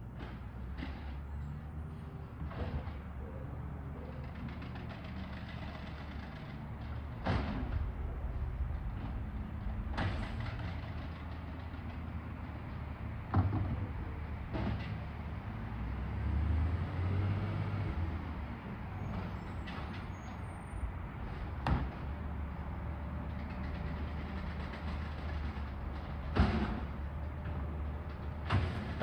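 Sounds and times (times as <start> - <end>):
garbage truck engine rumbling: 0.0 - 29.0
sharp bangs of trash bins: 7.1 - 12.3, 24.4 - 27.2, 28.4 - 29.0.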